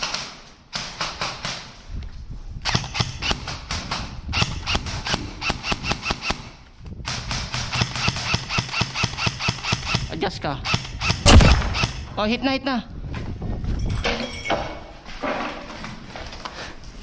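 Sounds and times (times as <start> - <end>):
airsoft guns firing: 0.0 - 1.7, 2.7 - 10.1, 10.8 - 12.1.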